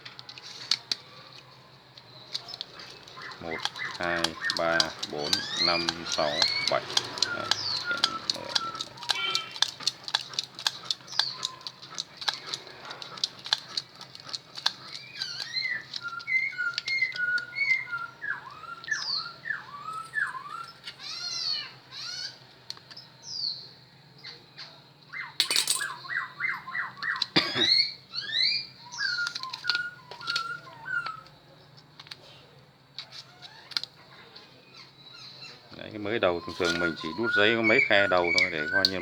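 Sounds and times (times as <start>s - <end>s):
bird chirping: 0.4s - 32.3s, 33.0s - 39.0s
rapid sharp clicks: 2.0s - 17.2s.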